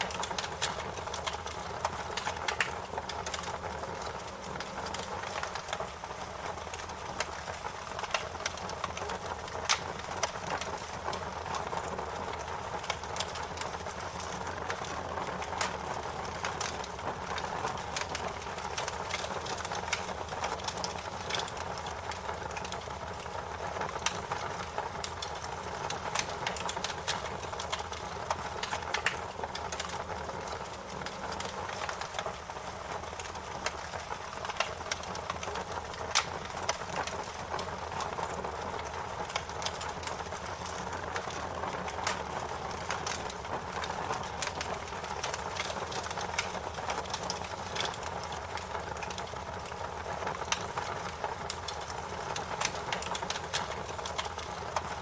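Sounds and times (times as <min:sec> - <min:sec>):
wood fire crackling: 0:00.0 - 0:55.0
sharp pops and snaps: 0:23.9 - 0:30.0, 0:33.1 - 0:54.9.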